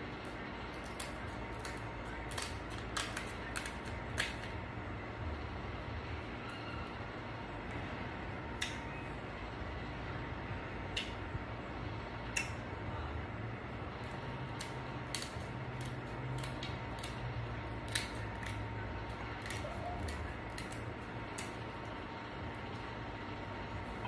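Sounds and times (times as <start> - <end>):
steady low hum: 0.0 - 24.0
shells cracking by hand: 0.8 - 4.5.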